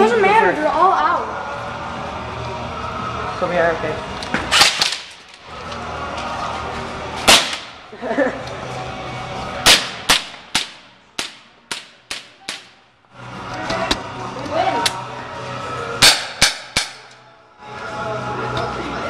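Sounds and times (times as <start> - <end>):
airsoft gun shots: 7.3 - 7.7, 9.7 - 12.7, 16.0 - 17.0.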